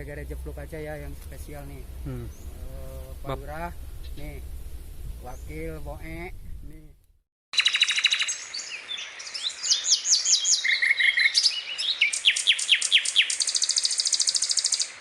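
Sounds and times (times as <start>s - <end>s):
birds chirping and trilling: 0.7s - 4.4s, 5.2s - 5.8s, 7.6s - 15.0s.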